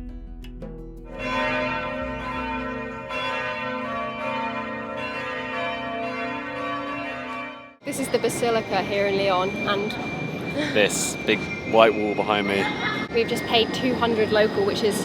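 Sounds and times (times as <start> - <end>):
church bells ringing: 1.1 - 15.0.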